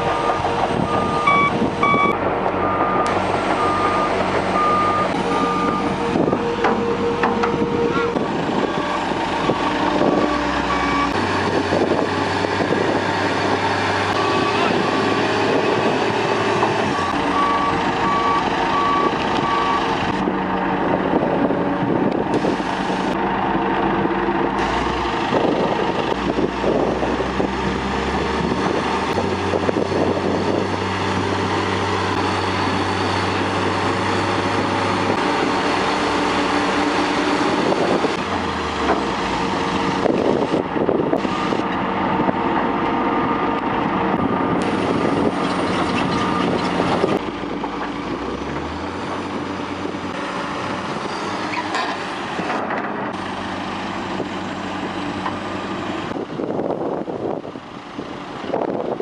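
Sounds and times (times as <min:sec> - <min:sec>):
heavy machinery engines: 0:00.0 - 0:59.0
reversing alarm beeping: 0:00.1 - 0:08.0, 0:14.1 - 0:15.0, 0:16.9 - 0:19.9.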